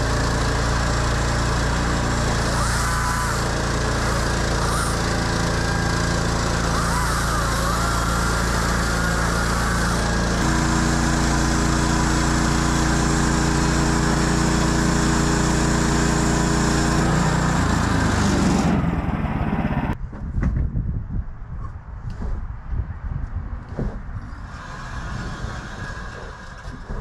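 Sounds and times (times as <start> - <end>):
saw blade cutting log: 0.0 - 18.8, 23.8 - 27.0
gas engine running: 0.0 - 20.0.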